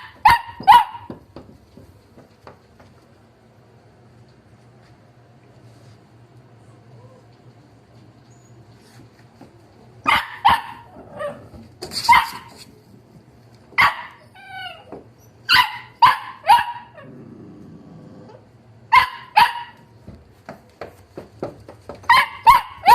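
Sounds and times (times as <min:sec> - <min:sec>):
puppies barking in high yaps: 0:00.0 - 0:01.3, 0:10.0 - 0:12.6, 0:13.8 - 0:17.1, 0:18.9 - 0:19.9, 0:22.0 - 0:22.9
puppy whining: 0:06.6 - 0:07.5, 0:13.8 - 0:18.6.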